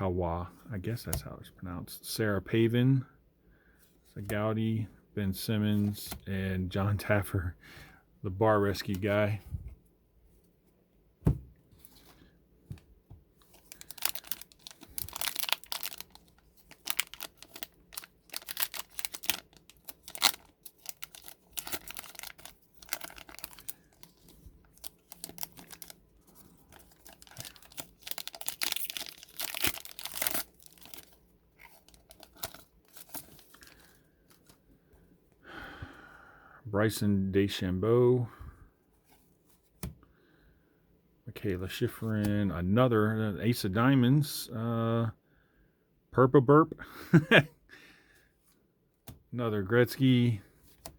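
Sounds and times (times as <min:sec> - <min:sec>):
card wrapper tearing and crinkling: 0:13.4 - 0:34.4.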